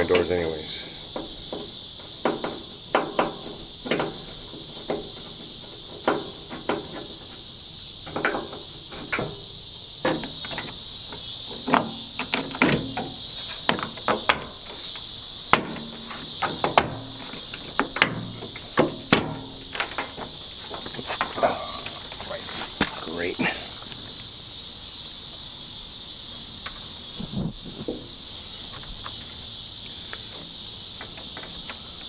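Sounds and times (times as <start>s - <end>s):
insects chirping: 0.0s - 32.0s
clicks and knocks of hand tools: 10.0s - 23.0s.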